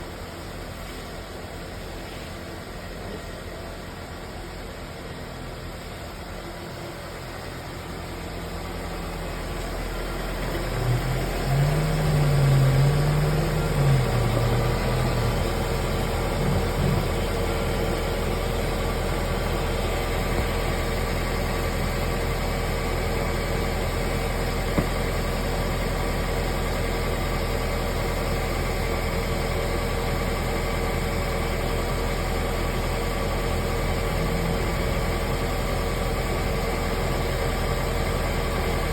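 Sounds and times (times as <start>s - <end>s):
car running with low hum: 0.0s - 38.9s
wavering low tone: 10.6s - 17.8s.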